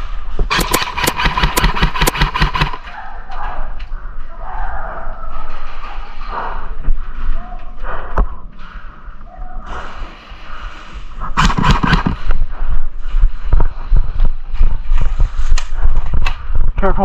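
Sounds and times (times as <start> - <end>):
sharp clicks and knocks: 0.4 - 2.9, 11.4 - 12.4
loud noisy burst: 0.5 - 2.8.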